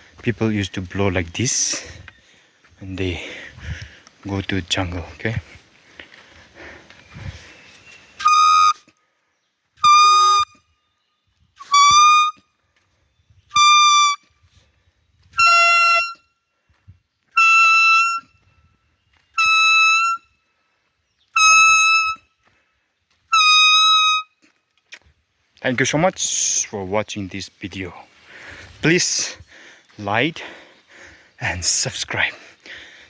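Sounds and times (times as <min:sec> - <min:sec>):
deer call high bleating: 0:08.2 - 0:08.8, 0:09.8 - 0:10.6, 0:11.6 - 0:12.4, 0:13.6 - 0:14.2, 0:15.4 - 0:16.2, 0:17.4 - 0:18.3, 0:19.4 - 0:20.2, 0:21.4 - 0:22.2, 0:23.3 - 0:24.2.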